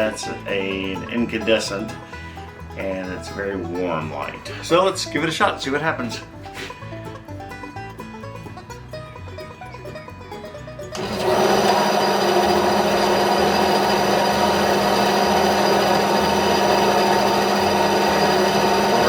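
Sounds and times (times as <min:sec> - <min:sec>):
quiet guitar music: 0:00.0 - 0:11.0
bandsaw running: 0:10.9 - 0:19.0.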